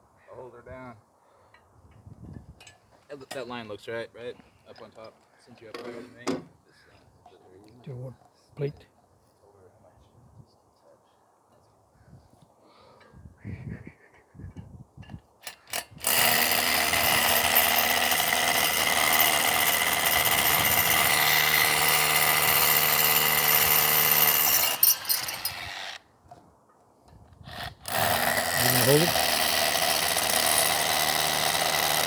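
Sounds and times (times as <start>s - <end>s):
hammer drill boring into concrete: 15.5s - 26.0s, 27.5s - 32.0s.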